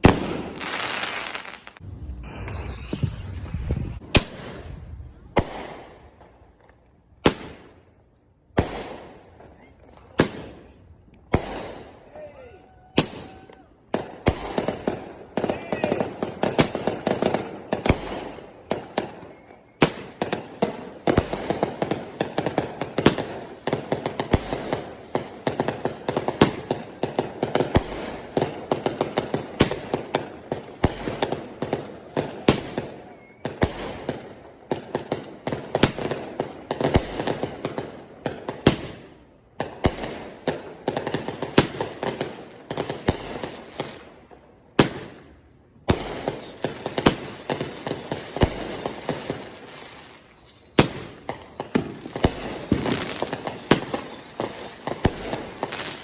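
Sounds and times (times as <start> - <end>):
fireworks crackling: 0.0 - 6.4, 48.5 - 56.0
fireworks bangs: 0.0 - 7.6, 50.8 - 56.0.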